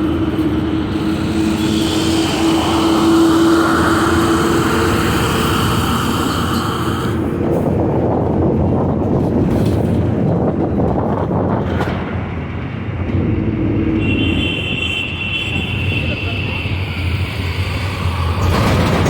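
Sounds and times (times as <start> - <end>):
road vehicles rumbling: 0.0 - 19.0
wind on microphone: 0.0 - 19.0
high steady tone: 0.7 - 6.8.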